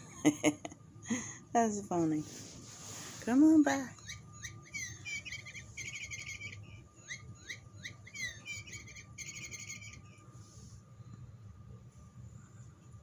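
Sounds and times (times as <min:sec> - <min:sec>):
electronic bird chirping sounds: 0:03.7 - 0:10.2.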